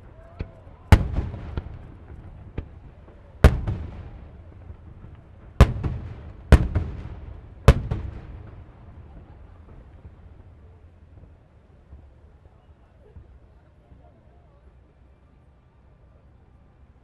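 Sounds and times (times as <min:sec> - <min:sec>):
fireworks bursting: 0:00.0 - 0:11.4
rumble and crackle of fireworks: 0:00.0 - 0:17.0.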